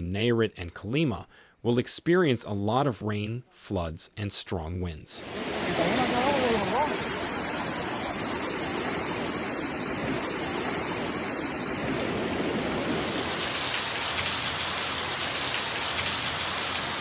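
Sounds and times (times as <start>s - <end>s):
heavy rain pouring: 5.2s - 17.0s
running water: 5.2s - 17.0s.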